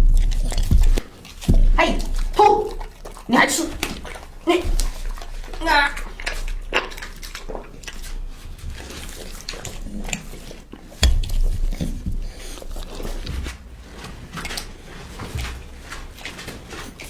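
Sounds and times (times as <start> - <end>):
heavier knock: 0.0 - 2.4
puppy chewing food: 0.0 - 17.0.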